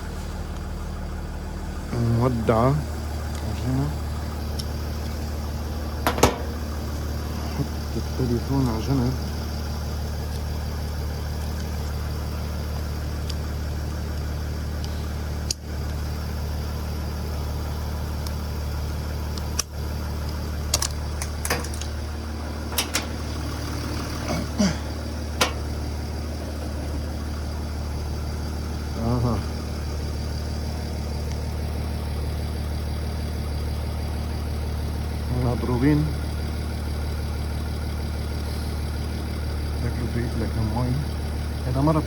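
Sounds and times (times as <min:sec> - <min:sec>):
car engine idling: 0:00.0 - 0:42.0
sharp clicks: 0:25.4 - 0:25.8.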